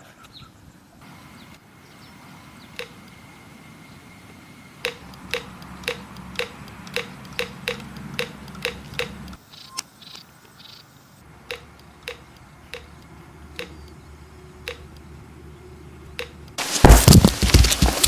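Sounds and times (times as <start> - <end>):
sharp regular clicks: 4.8 - 9.4, 11.4 - 14.0, 14.6 - 15.1.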